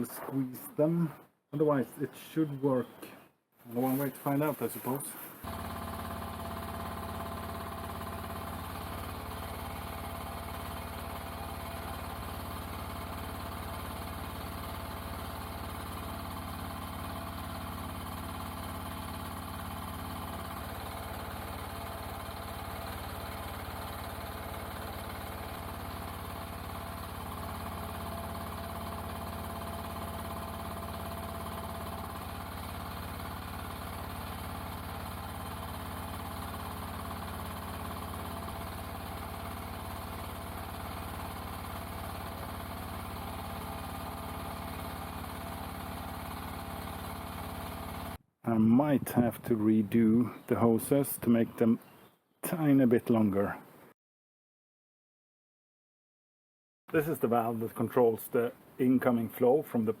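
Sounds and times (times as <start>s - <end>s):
mini excavator engine running: 3.7s - 48.2s.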